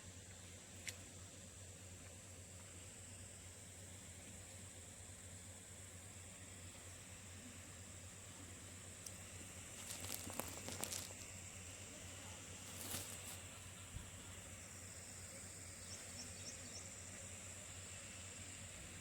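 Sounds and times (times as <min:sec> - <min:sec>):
steady high hiss: 0:00.0 - 0:19.0
rustling clicks: 0:09.8 - 0:11.3.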